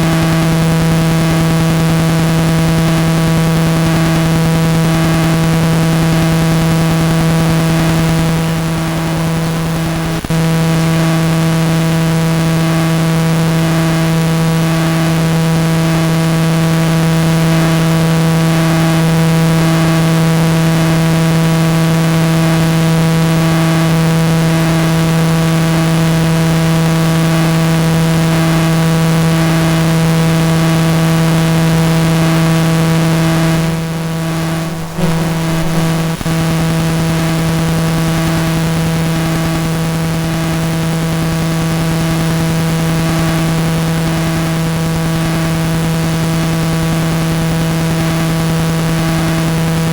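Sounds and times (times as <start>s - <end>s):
electrical buzz: 31.4s - 41.0s
crackling: 33.9s - 38.1s.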